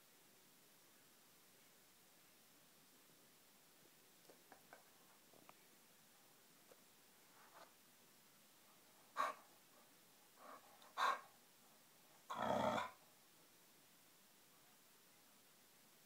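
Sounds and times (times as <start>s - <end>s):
puppy huffing: 9.2s - 9.4s, 10.4s - 11.3s.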